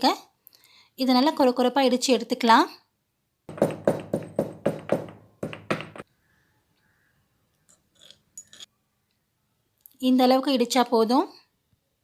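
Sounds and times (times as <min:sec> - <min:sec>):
pestle pounding in mortar: 0:03.5 - 0:06.0.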